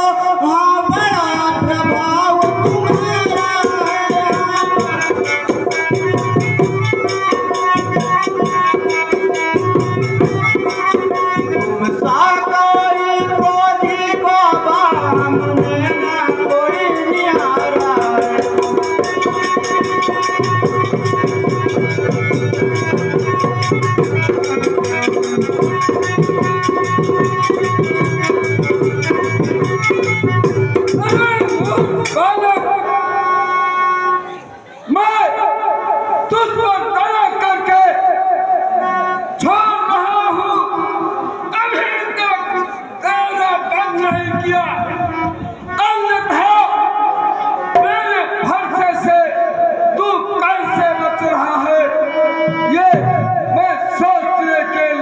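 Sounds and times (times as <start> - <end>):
fast folk drumming: 0.8 - 32.9, 43.0 - 46.8, 47.6 - 55.0
sliding melodic notes: 2.4 - 34.4.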